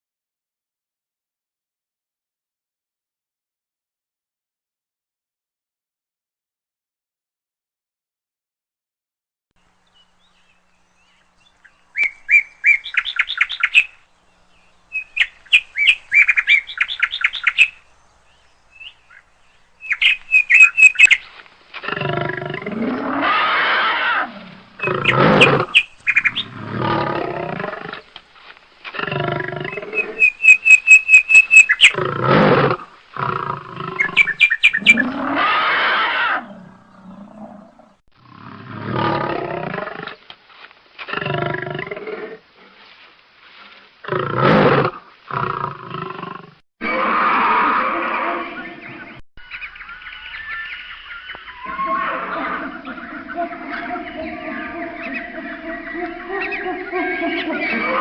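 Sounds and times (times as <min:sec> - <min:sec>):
bird chirps in high trills: 0:19.8 - 0:21.3, 0:29.7 - 0:32.0, 0:33.9 - 0:35.2, 0:48.6 - 0:52.5
lion-like roars: 0:21.8 - 0:25.7, 0:26.4 - 0:28.0, 0:34.8 - 0:40.2, 0:44.1 - 0:49.2, 0:51.6 - 0:58.0.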